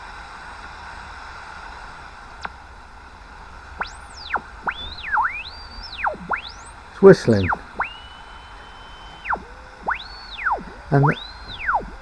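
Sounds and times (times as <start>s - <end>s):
shortwave receiver hissing: 2.2s - 12.0s
radio whistle sweeping in pitch: 3.8s - 12.0s
brief falling chirp: 7.3s - 12.0s.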